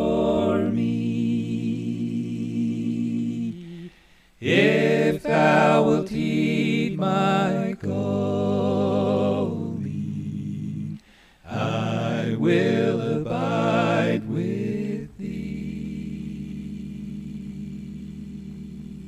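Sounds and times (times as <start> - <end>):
congregation singing a hymn: 0.0 - 19.0
steady low hum: 13.2 - 19.0.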